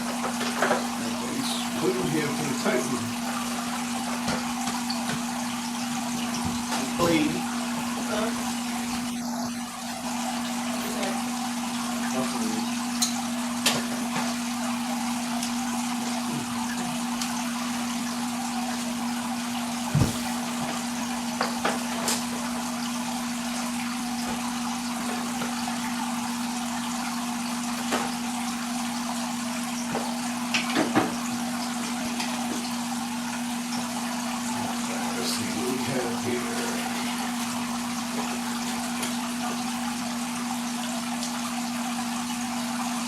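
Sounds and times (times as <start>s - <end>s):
circulating water rushing: 0.0s - 43.0s.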